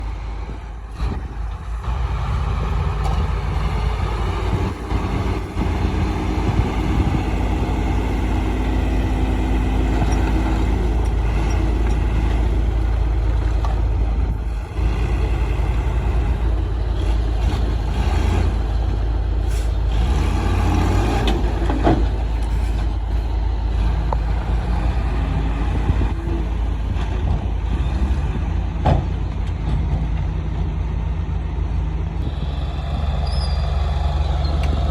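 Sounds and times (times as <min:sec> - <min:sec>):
heavy diesel engine running: 0:00.0 - 0:34.9.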